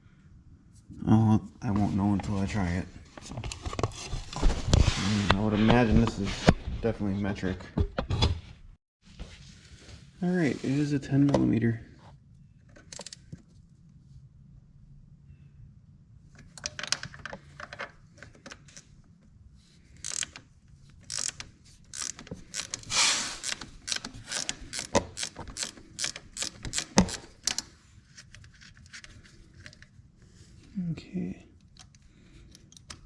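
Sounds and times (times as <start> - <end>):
ratchet wrench clicking: 20.0 - 20.4, 21.0 - 27.6.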